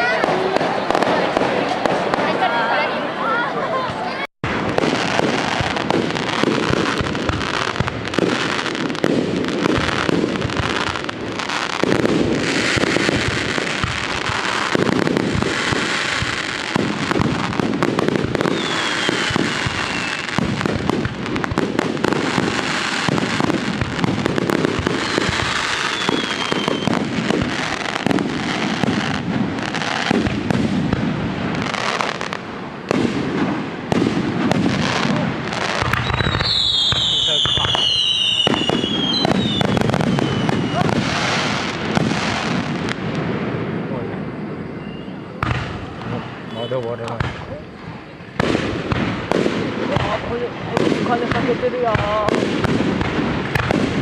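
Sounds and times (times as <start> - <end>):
fireworks bangs and crackling: 0.0 - 54.0
falling whistle: 18.5 - 19.2, 25.9 - 27.0, 36.0 - 40.9, 44.3 - 45.4.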